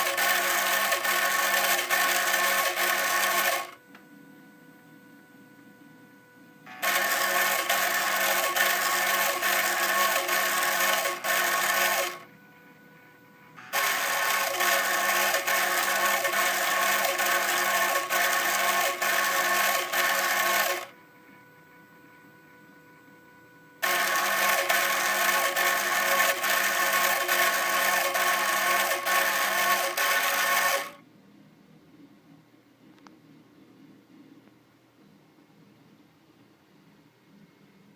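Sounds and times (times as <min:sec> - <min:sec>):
mini drill motor whirring: 0:00.0 - 0:03.8, 0:06.7 - 0:12.2, 0:13.6 - 0:20.9, 0:23.8 - 0:31.0.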